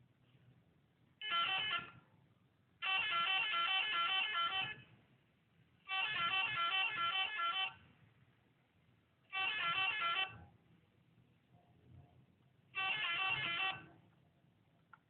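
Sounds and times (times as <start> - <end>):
electronic horn playing melody: 1.2 - 2.0, 2.8 - 4.8, 5.9 - 7.8, 9.3 - 10.4, 12.8 - 13.9.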